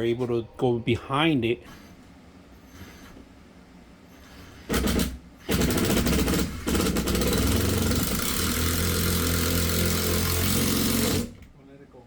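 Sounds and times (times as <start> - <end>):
power drill rattling: 4.7 - 11.4.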